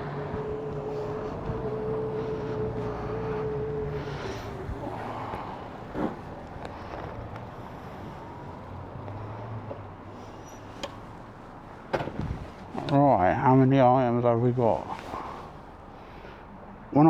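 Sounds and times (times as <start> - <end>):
electric bike motor whining: 0.0 - 5.3
low traffic hum: 0.0 - 17.0.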